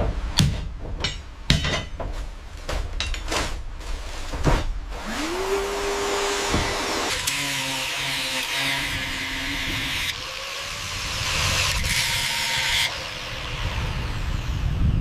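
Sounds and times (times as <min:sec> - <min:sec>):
low hum of a tool: 0:03.0 - 0:15.0
power tool whining: 0:05.0 - 0:15.0.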